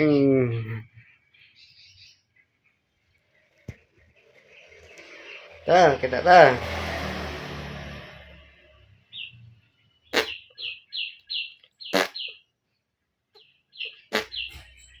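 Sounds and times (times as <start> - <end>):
bird chirping: 0.0 - 15.0.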